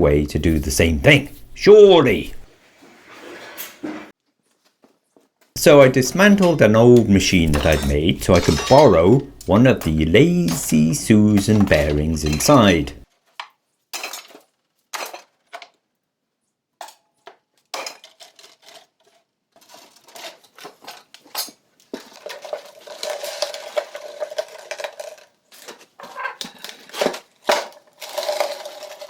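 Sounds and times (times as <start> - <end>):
metal parts clinking and clattering: 7.3 - 13.0, 17.7 - 29.0
metal rattling and scraping: 7.3 - 13.0.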